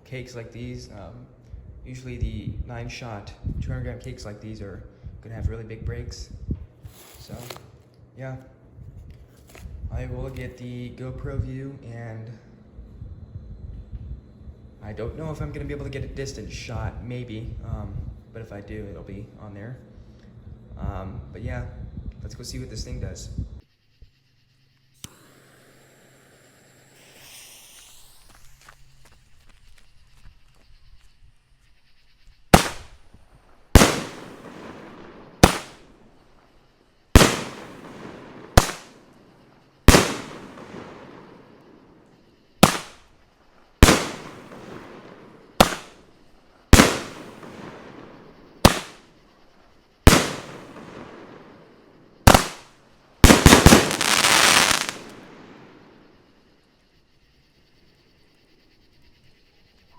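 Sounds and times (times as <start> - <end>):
firework shells bursting: 6.6 - 8.0, 9.1 - 10.6, 25.0 - 29.0, 32.5 - 56.1
firework crackling: 6.8 - 7.8, 25.0 - 29.6, 32.5 - 36.2, 37.1 - 49.2, 50.0 - 56.1.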